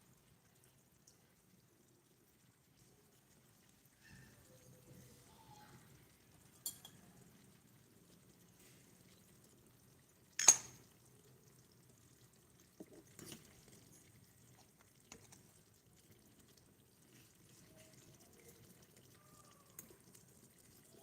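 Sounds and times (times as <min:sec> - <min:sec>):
kitchenware clinking: 0:06.6 - 0:07.0, 0:10.4 - 0:10.8.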